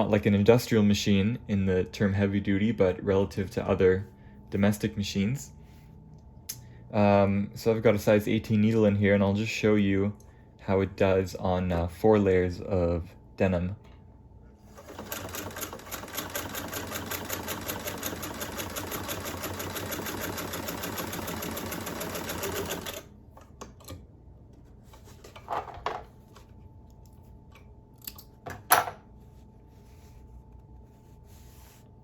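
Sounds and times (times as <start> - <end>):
sewing machine stitching: 14.7 - 23.1.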